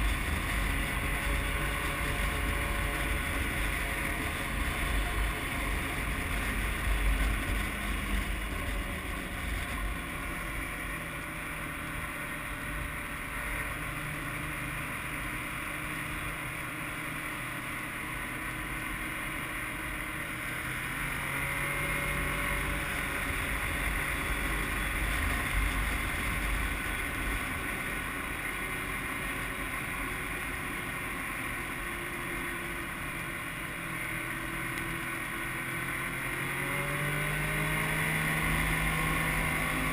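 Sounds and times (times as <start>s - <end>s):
snowmobile engine running: 0.0s - 39.9s
wind rumbling on microphone: 20.9s - 30.6s.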